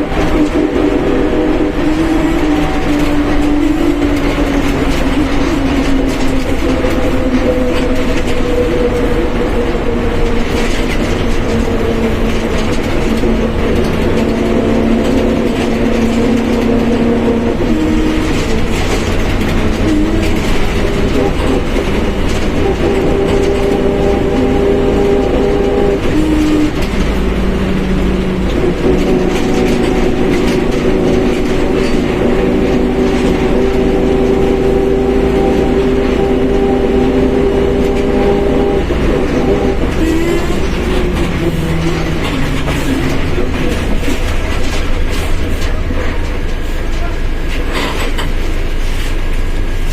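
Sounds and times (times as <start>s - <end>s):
differential whining: 0.0s - 48.7s
bus diesel engine rumble: 0.0s - 49.9s.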